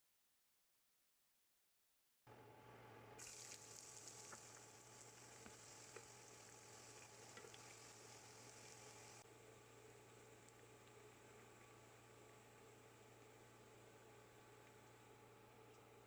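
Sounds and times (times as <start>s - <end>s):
okra frying in oil: 3.2s - 15.2s.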